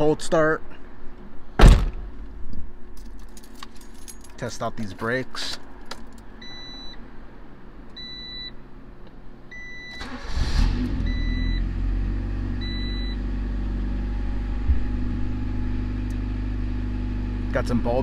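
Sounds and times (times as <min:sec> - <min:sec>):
dashboard warning chime beeps: 0:06.4 - 0:07.0, 0:08.0 - 0:08.6, 0:09.5 - 0:10.1, 0:12.6 - 0:13.2
engine cranking: 0:10.0 - 0:10.8
car engine idling: 0:11.6 - 0:18.0.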